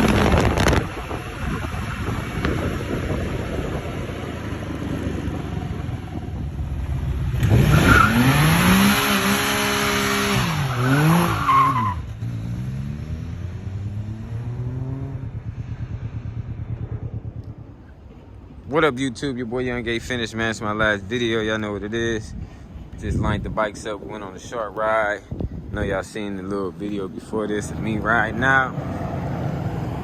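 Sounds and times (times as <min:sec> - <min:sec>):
engine revving: 0:06.8 - 0:17.8, 0:27.5 - 0:30.0
tyre screeching in a burnout: 0:07.4 - 0:12.3.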